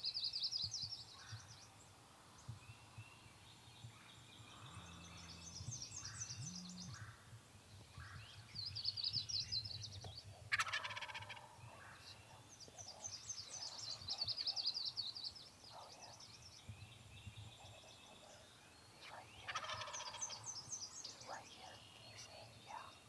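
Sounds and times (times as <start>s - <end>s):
songbirds trilling: 4.0s - 7.2s, 10.0s - 23.0s
turkey gobbling: 10.5s - 11.4s.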